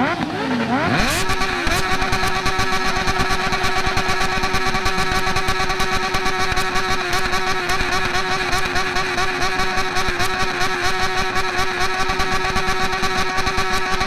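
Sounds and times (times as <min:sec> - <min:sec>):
motorcycle engine droning at high revs: 0:00.0 - 0:14.0.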